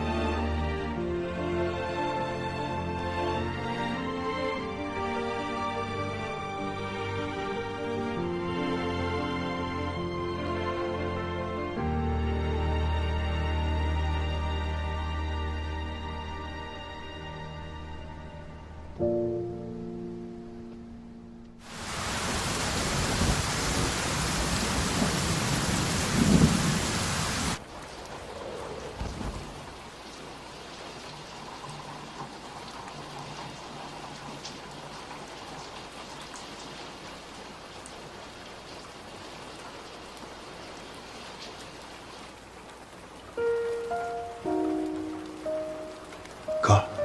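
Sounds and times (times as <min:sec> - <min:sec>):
heavy rain: 0:00.0 - 0:17.8, 0:21.6 - 0:47.0
thunder rumbling: 0:21.9 - 0:30.0.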